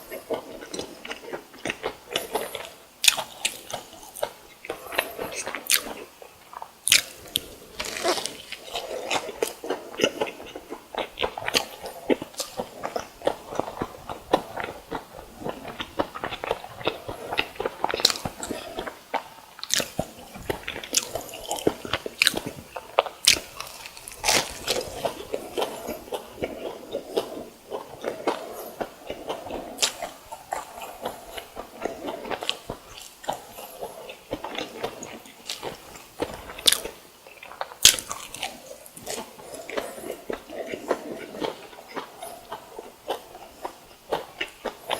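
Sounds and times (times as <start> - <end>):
crunchy chewing: 0.0 - 44.9.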